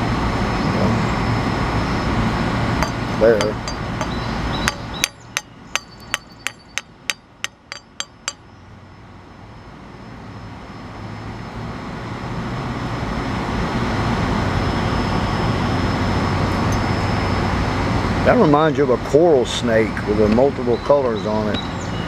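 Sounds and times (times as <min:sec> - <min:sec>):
chipping hammer striking weld: 0:02.8 - 0:08.4.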